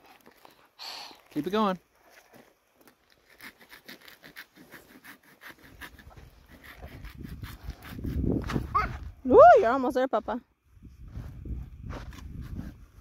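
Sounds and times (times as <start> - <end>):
hand saw cutting wood: 3.1 - 8.6.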